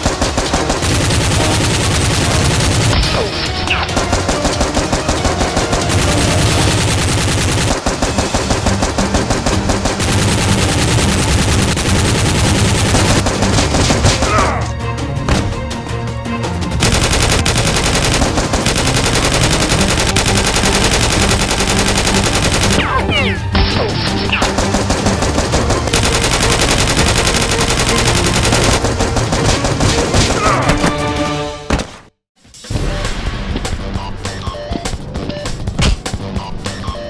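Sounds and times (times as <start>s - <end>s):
machine-gun fire: 0.0s - 3.1s, 3.7s - 14.3s, 16.8s - 22.9s, 24.3s - 30.5s.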